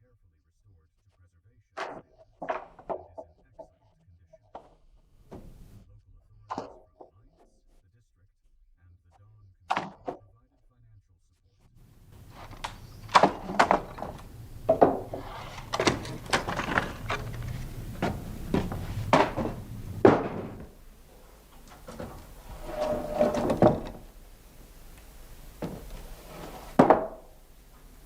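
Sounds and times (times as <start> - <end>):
wooden knocks and thuds: 5.3 - 5.8, 11.9 - 28.0
squeaky creak: 12.1 - 24.3.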